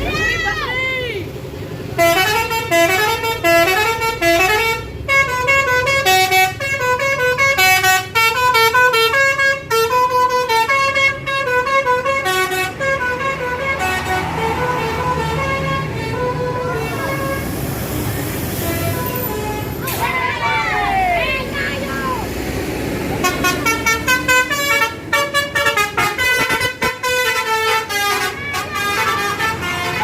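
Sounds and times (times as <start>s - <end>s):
musical air horn tune: 2.0s - 17.6s.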